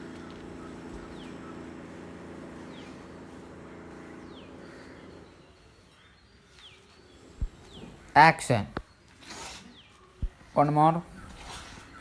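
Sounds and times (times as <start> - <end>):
engine running steadily: 0.0 - 5.5
bird chirps: 0.0 - 8.2.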